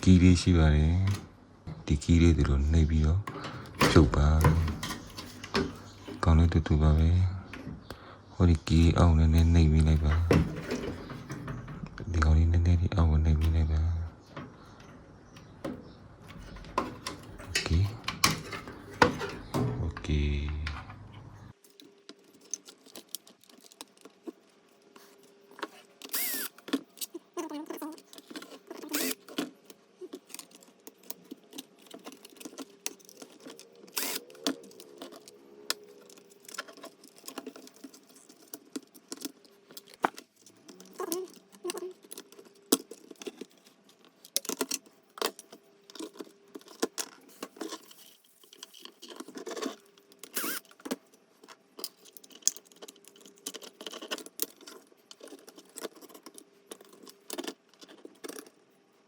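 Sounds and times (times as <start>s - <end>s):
clicks and rattles of parts handled: 3.2s - 6.6s, 8.6s - 12.1s, 14.2s - 59.0s.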